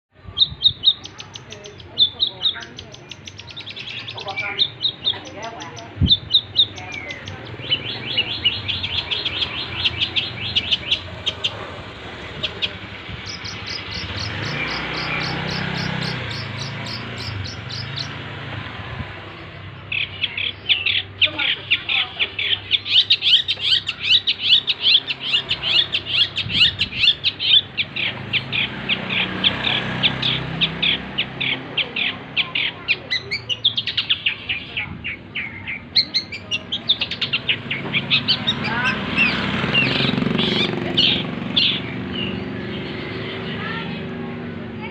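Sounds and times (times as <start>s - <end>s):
bird singing sharp high notes: 0.3s - 11.6s.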